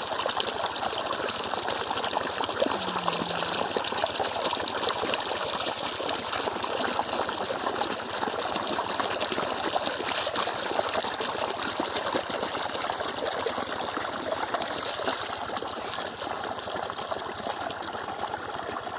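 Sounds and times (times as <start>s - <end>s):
water flowing: 0.0s - 18.9s.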